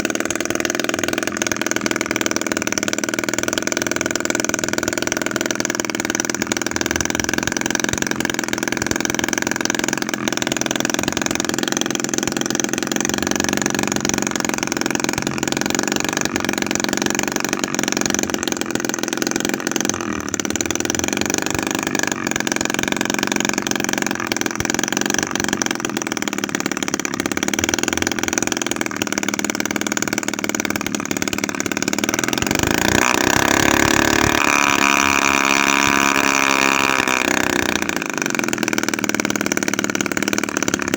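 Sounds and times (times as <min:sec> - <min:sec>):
small two-stroke engine running: 0:00.0 - 0:40.9.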